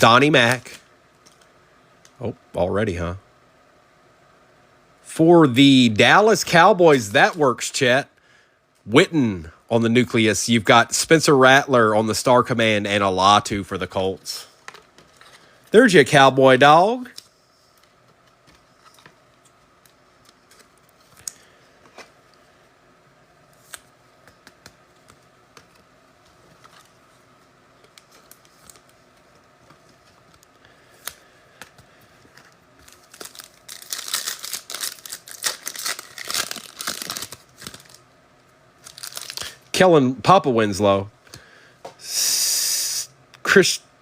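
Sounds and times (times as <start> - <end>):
foil wrapper tearing and crinkling: 32.8 - 38.0, 38.8 - 39.6.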